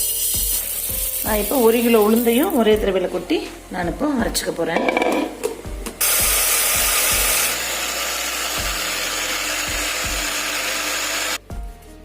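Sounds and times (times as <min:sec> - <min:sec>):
electric grinder whirring: 0:06.0 - 0:11.4.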